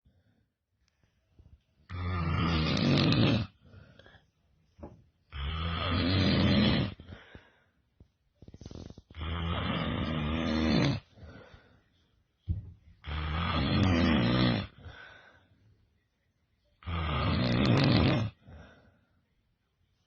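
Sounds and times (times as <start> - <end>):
quiet breaths: 0.0 - 20.0
loud snoring: 1.9 - 3.6, 5.3 - 7.1, 8.6 - 11.1, 13.0 - 14.8, 16.8 - 18.4.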